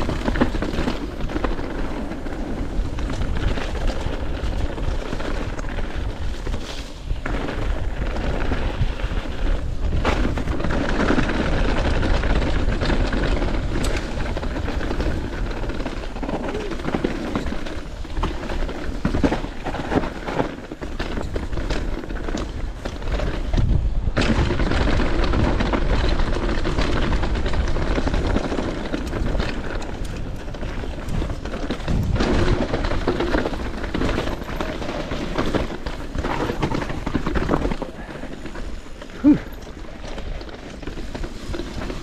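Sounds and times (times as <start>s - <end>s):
bike rattling and knocking: 0.0s - 42.0s
wind buffeting microphone: 0.0s - 42.0s.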